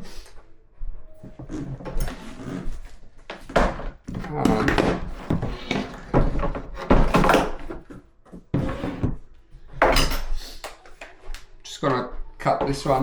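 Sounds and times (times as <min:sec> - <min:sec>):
furniture panels thunking: 0:03.4 - 0:10.1.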